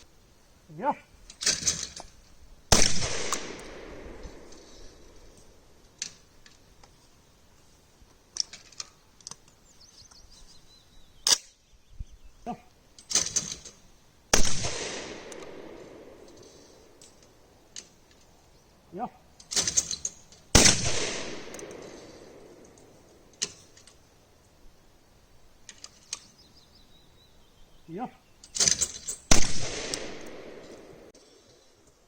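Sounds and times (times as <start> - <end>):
shotgun shots echoing: 2.7 - 5.6, 14.3 - 17.0, 20.5 - 22.8, 29.3 - 31.1
gun handling clicks: 2.8 - 6.9, 11.3 - 11.5, 14.4 - 18.3, 19.4 - 24.0, 28.4 - 31.0.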